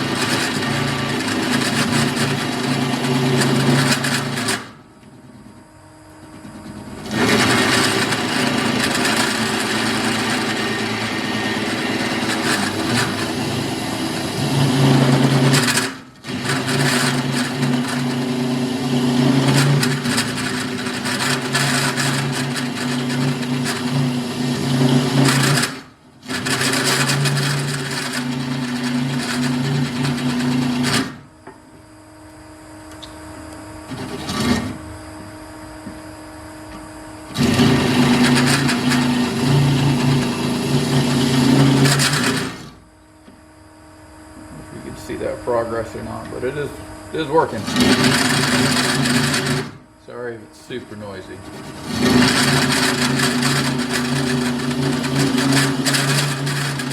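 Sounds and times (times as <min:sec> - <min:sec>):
cutter grinding through steel: 0:00.0 - 0:04.8, 0:06.8 - 0:31.3, 0:37.3 - 0:42.8, 0:45.1 - 0:56.9
drill press motor hum: 0:00.0 - 0:56.9.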